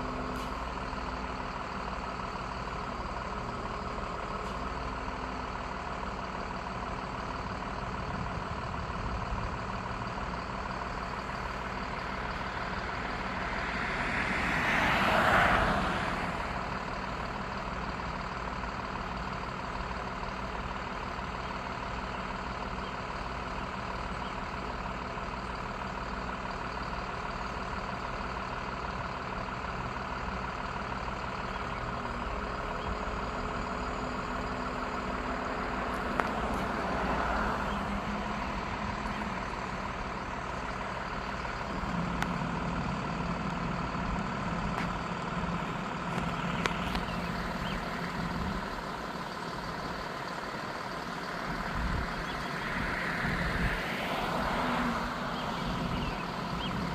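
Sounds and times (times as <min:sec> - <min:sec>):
vehicle engine idling: 0:00.0 - 0:56.9
vehicle passing: 0:12.1 - 0:16.9, 0:52.3 - 0:56.9.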